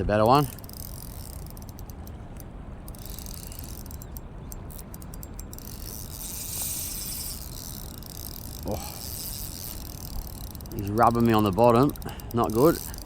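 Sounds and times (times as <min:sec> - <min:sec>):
fishing reel clicking: 0:00.2 - 0:13.0.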